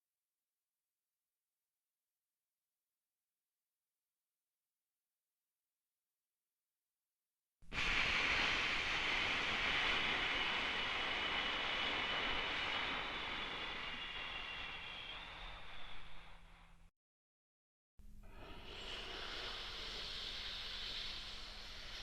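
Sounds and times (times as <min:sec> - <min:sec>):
airy breath exhale hiss: 0:07.6 - 0:16.7, 0:18.2 - 0:22.0.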